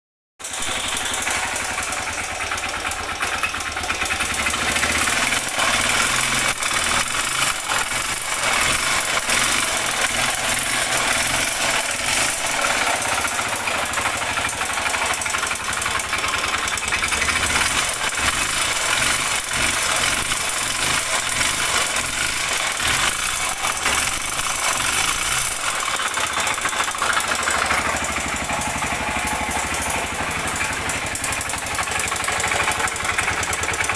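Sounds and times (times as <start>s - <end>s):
motorcycle engine knocking: 0.4s - 33.9s.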